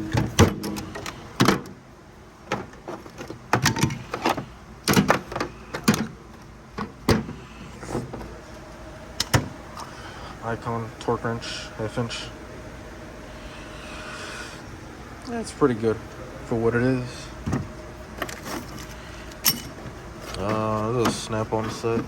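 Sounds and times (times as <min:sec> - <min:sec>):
handling noise: 0:00.0 - 0:01.8, 0:17.4 - 0:22.0.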